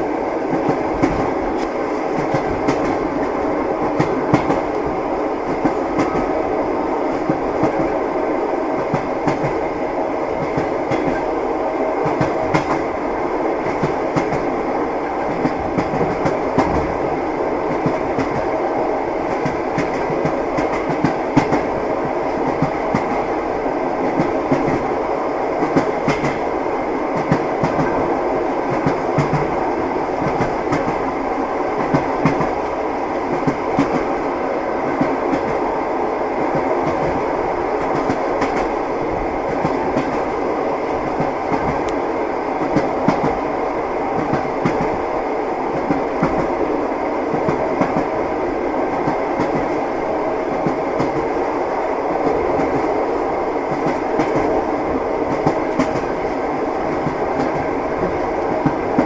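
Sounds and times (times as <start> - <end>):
train wheels clattering: 0.5 - 4.9, 10.4 - 11.4, 25.6 - 26.5, 28.6 - 31.1.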